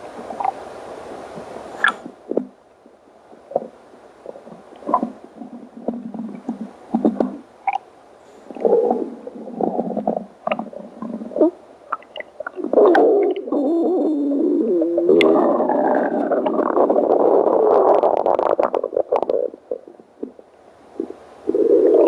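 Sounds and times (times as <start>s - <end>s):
stomach growling: 3.4s - 7.8s, 8.5s - 20.4s, 21.0s - 22.0s.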